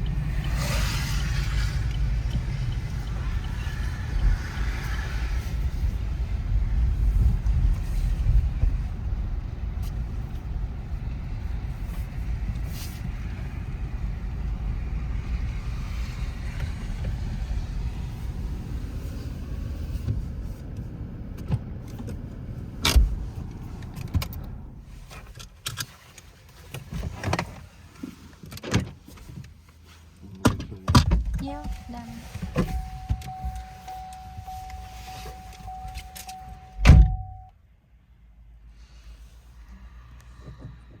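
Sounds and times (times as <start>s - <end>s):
car rumbling: 0.0s - 41.0s.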